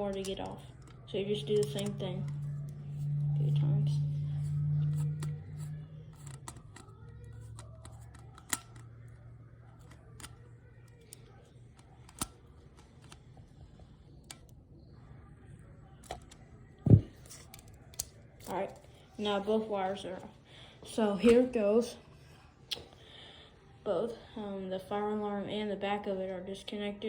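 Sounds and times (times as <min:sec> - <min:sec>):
screwdriver clicking on metal: 0:00.0 - 0:03.1, 0:04.9 - 0:09.1, 0:17.2 - 0:18.8.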